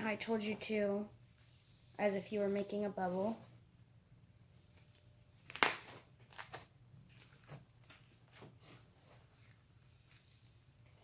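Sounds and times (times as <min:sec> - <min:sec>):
slime crackling and popping: 0:05.4 - 0:08.2.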